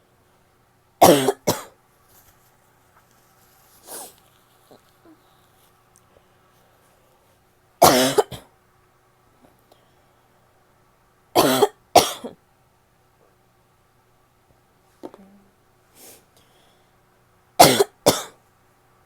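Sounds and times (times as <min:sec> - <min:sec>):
woman's barking cough: 0:01.0 - 0:01.8, 0:07.8 - 0:08.5, 0:11.4 - 0:12.4, 0:17.6 - 0:18.4.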